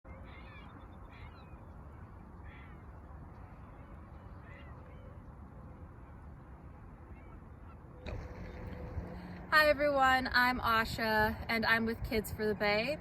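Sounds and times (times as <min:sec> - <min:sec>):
faint bird calls: 0:00.1 - 0:08.9
low outdoor rumble: 0:00.1 - 0:13.0.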